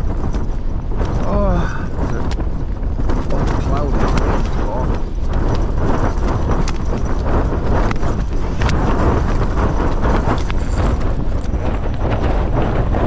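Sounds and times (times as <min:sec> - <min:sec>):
rapid flapping and knocking: 0:00.0 - 0:13.0
strong wind buffeting microphone: 0:00.0 - 0:13.0.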